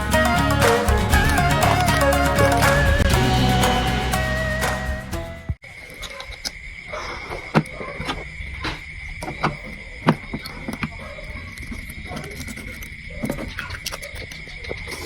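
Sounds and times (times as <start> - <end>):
insects trilling: 5.6 - 15.0.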